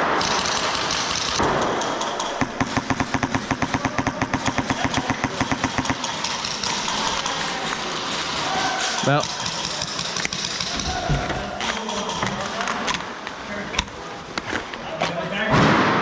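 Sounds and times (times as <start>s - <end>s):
airsoft rifle full-auto burst: 0.0s - 7.5s.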